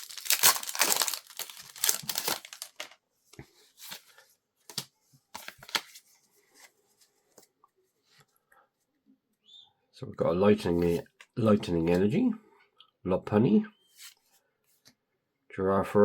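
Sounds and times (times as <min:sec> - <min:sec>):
foil wrapper crinkling and tearing: 0:00.0 - 0:03.0.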